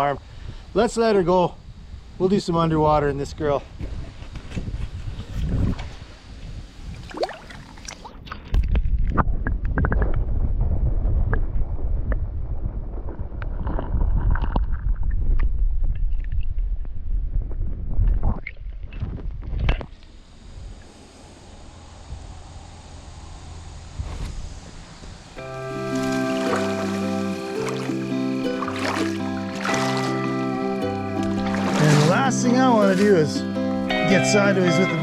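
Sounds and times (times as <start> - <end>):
water splashing: 7.0 - 8.2, 25.4 - 34.0.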